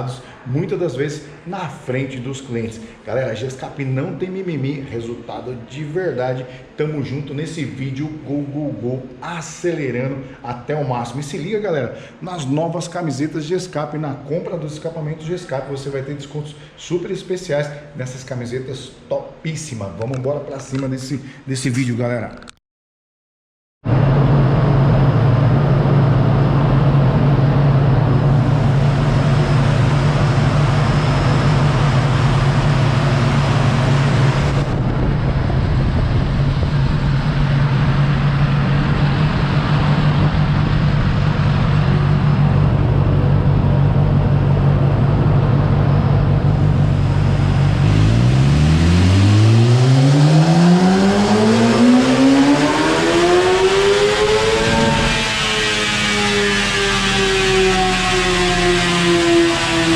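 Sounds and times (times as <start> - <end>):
motorcycle engine idling and revving: 36.4 - 59.9.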